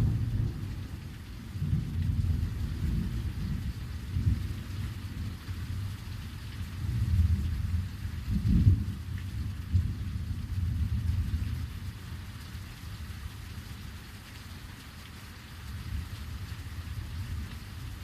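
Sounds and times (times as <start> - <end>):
thunder rumbling: 0.0 - 5.4, 6.8 - 11.8
heavy rain pouring: 0.0 - 18.0.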